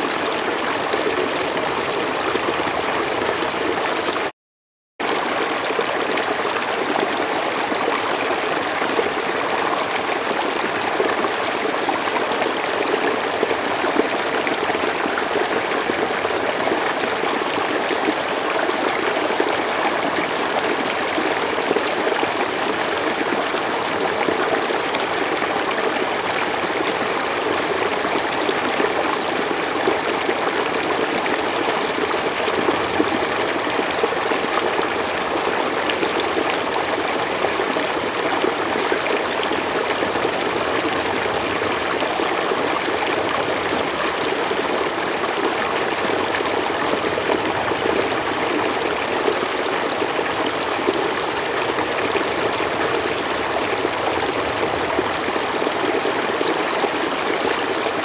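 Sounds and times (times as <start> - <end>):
stream flowing over rocks: 0.0 - 4.3, 5.0 - 58.0.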